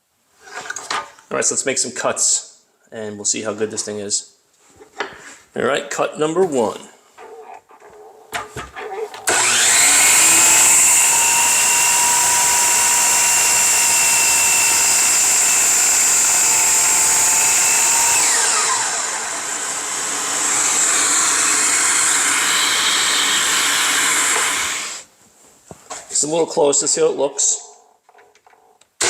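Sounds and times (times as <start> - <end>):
dust extractor hissing: 9.2 - 25.1
miter saw whine: 9.3 - 25.0.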